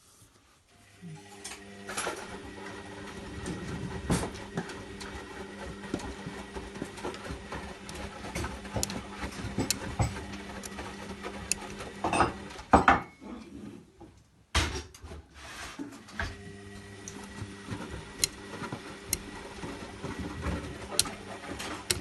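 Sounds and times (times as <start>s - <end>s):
washing machine motor hum: 0.7s - 12.8s, 16.0s - 22.0s.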